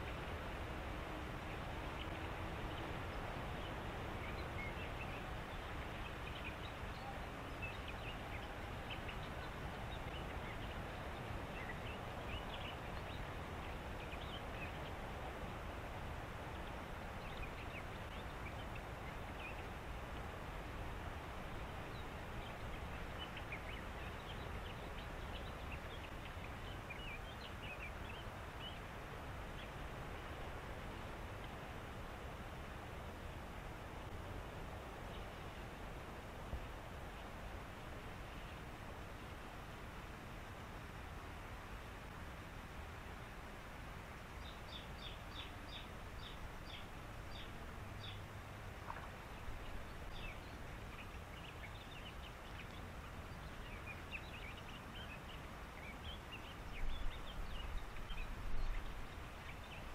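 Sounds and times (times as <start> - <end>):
steady background hiss: 0.0 - 59.9
birds chirping: 44.2 - 48.3, 48.9 - 59.9.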